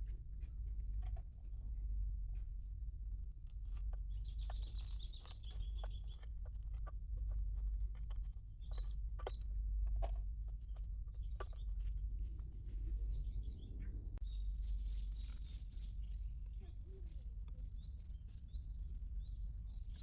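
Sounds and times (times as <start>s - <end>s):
birds chirping: 4.1s - 6.7s, 13.0s - 20.0s.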